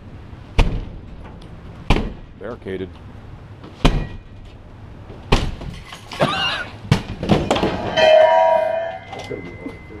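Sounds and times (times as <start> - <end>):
steady pitched tone: 7.9 - 10.0.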